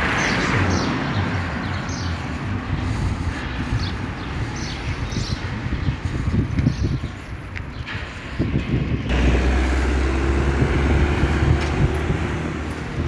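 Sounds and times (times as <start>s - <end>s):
vehicle engine running: 9.1s - 13.0s.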